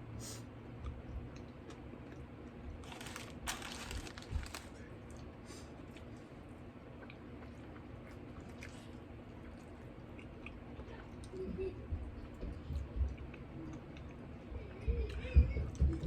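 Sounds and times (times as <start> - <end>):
person chewing food: 0.8 - 6.2, 6.8 - 10.6.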